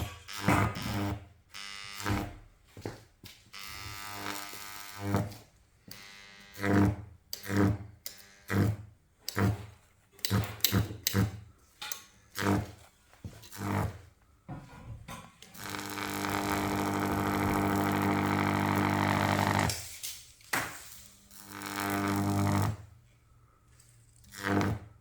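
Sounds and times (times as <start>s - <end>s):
high-voltage arc buzzing: 0.0s - 2.6s, 3.4s - 9.6s, 15.5s - 23.0s, 24.3s - 25.0s.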